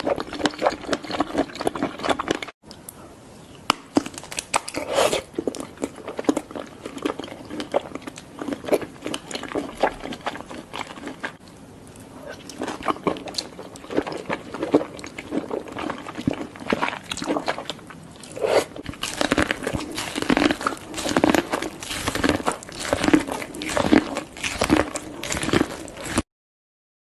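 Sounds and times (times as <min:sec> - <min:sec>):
wet chewing and smacking: 0:00.0 - 0:02.6, 0:03.9 - 0:26.2
crunching bites: 0:18.2 - 0:26.2.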